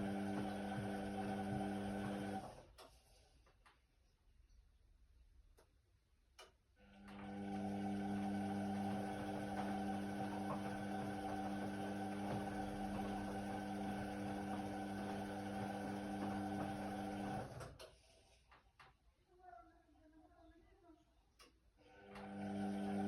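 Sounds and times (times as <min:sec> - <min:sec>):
washer-dryer humming and hissing: 0:00.0 - 0:03.2, 0:06.8 - 0:18.6, 0:21.8 - 0:23.0.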